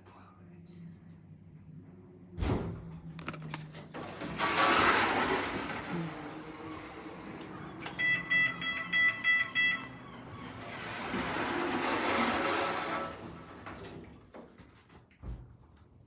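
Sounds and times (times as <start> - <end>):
elevator rushing noise: 3.9 - 14.1
short electronic beeps: 8.0 - 10.2.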